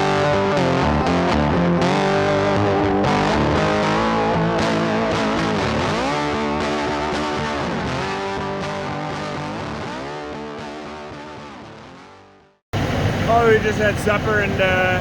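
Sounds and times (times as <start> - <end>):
distorted electric guitar music: 0.0 - 15.0.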